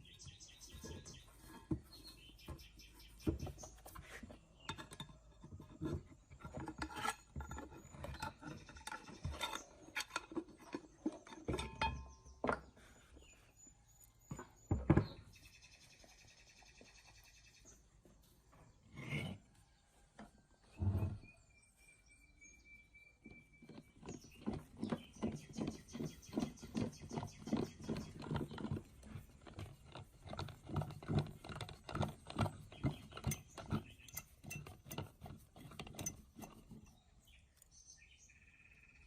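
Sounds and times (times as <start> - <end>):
metal tools clinking and scraping: 4.6 - 12.6, 30.3 - 37.0.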